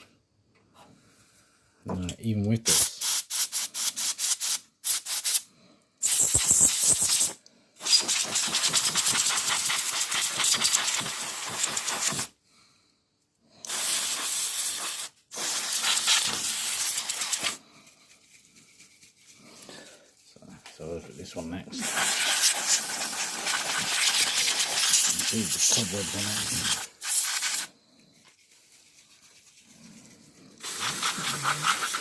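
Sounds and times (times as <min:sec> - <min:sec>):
compressed air spraying: 0:02.7 - 0:12.4, 0:13.6 - 0:17.6, 0:21.8 - 0:27.8, 0:30.6 - 0:32.0.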